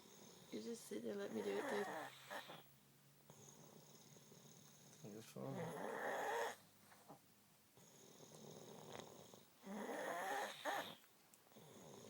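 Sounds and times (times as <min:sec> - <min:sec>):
woman snoring: 0:01.3 - 0:02.6, 0:08.2 - 0:11.0.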